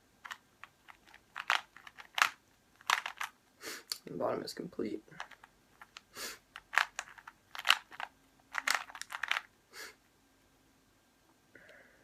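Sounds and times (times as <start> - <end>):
puzzle cube plastic clicks: 0.2 - 3.4, 5.2 - 9.5.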